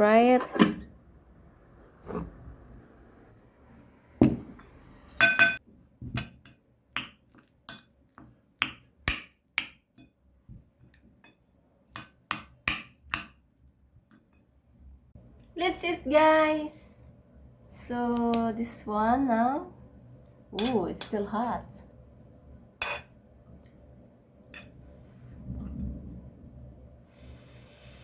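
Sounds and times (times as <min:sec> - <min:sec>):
cutlery clinking against a plate: 0:22.8 - 0:23.1.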